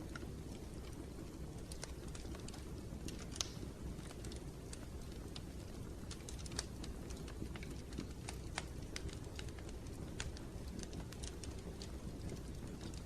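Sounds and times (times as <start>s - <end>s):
wood fire crackling: 0.0s - 13.0s.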